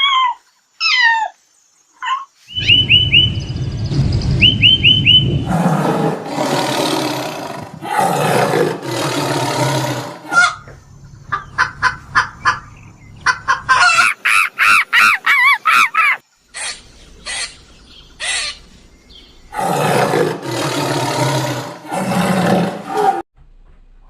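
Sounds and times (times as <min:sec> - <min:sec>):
domestic fowl calling: 0:10.0 - 0:17.6
harsh noisy fowl calls: 0:13.2 - 0:17.5.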